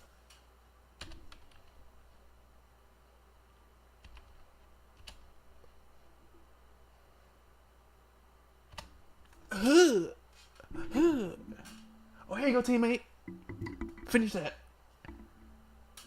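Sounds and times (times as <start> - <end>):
steady low hum: 0.0 - 16.0
keyboard clicks: 1.0 - 1.8, 4.0 - 4.4, 5.0 - 5.3, 8.7 - 9.0.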